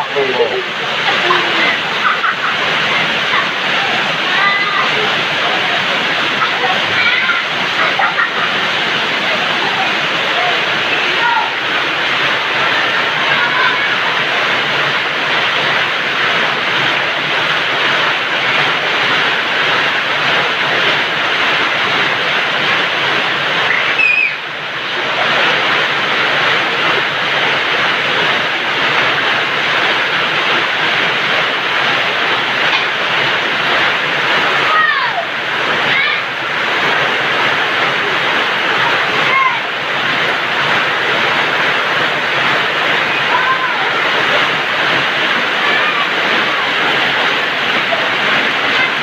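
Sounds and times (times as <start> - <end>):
heavy rain: 0.0 - 49.0
short high cries: 23.7 - 24.4.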